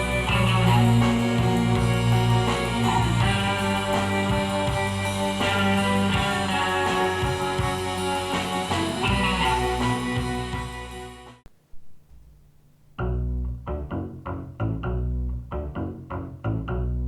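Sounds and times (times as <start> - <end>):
rock music through speakers: 0.0 - 11.4.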